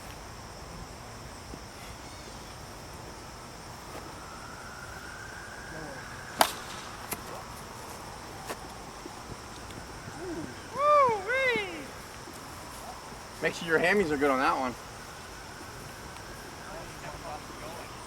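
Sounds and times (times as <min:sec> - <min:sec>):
plastic bat hitting ball: 0:06.4 - 0:07.3.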